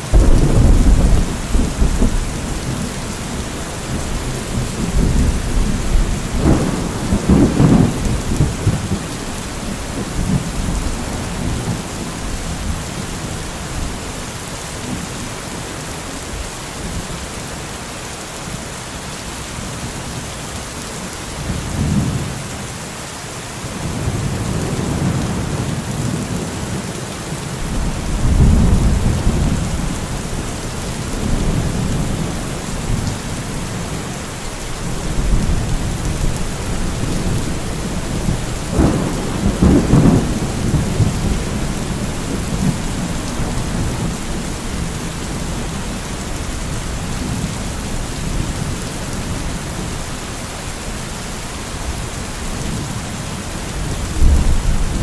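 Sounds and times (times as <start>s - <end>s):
steady rain: 0.0s - 55.0s
rolling thunder: 0.1s - 13.9s, 27.6s - 50.1s, 53.8s - 55.0s.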